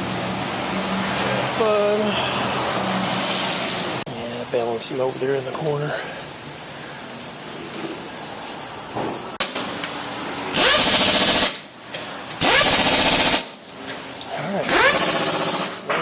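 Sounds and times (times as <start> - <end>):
impact wrench whining and rattling: 10.5 - 11.7, 12.4 - 13.6, 14.7 - 16.0.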